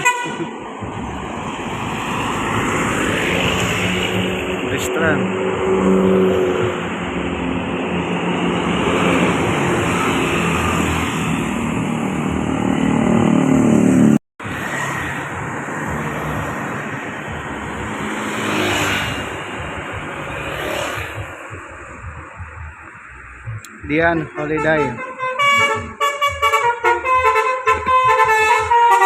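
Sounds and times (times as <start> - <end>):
vehicle passing close: 0.0 - 23.8
bus engine revving: 0.0 - 29.0
traffic noise: 0.0 - 29.0.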